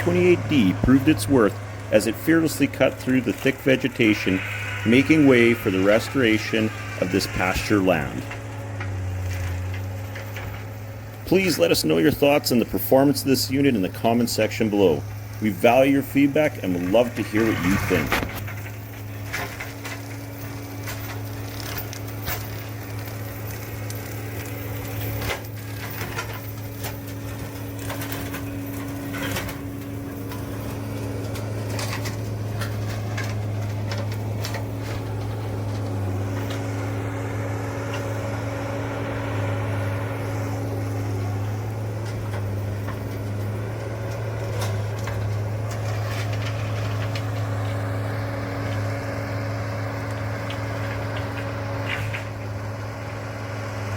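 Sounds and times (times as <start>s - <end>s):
diesel engine under load: 0.0s - 53.9s
wood snapping: 17.6s - 37.0s, 40.2s - 52.6s.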